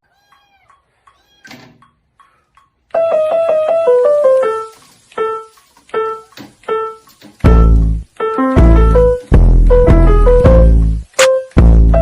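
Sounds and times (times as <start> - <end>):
piano-like keyboard notes: 2.9 - 12.0.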